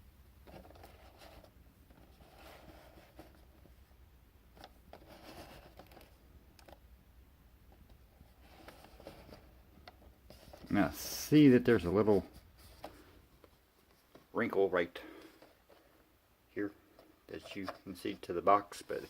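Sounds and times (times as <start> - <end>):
light clicks of box handling: 4.5 - 6.8, 7.7 - 10.8
cardboard box rustling: 4.9 - 6.2.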